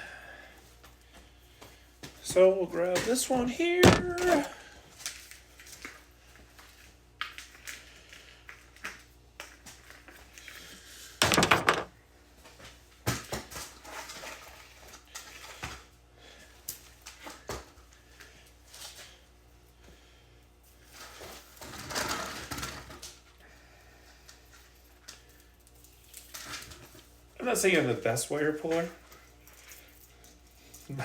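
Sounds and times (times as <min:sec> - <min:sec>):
wire rustling and knocking: 0:11.2 - 0:12.0.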